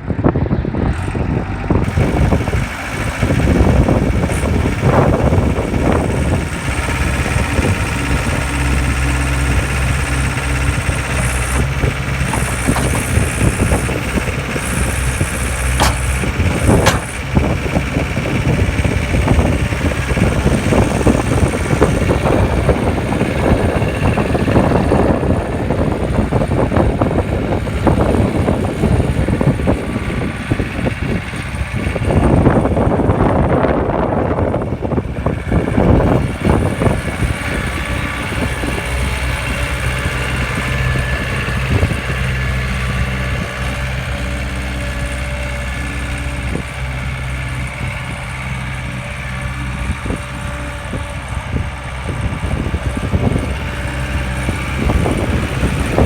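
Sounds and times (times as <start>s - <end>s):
diesel engine running: 0.0s - 56.0s
sharp knocks: 11.5s - 14.0s, 15.7s - 17.4s.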